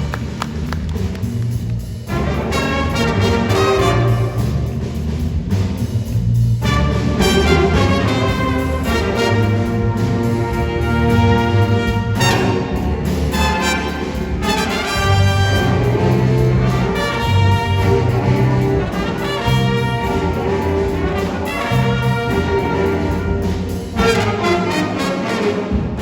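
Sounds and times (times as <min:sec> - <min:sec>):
brass orchestral music: 0:00.0 - 0:26.0.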